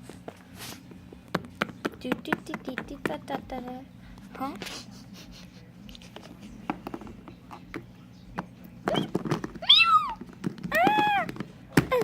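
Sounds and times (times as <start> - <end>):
cat meowing: 9.6 - 11.3.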